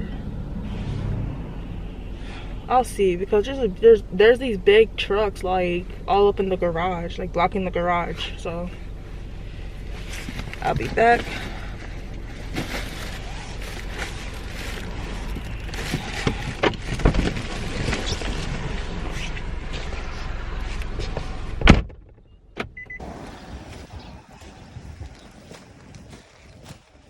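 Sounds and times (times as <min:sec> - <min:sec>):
low car interior rumble: 0:00.0 - 0:27.0
car door shutting: 0:21.0 - 0:23.7.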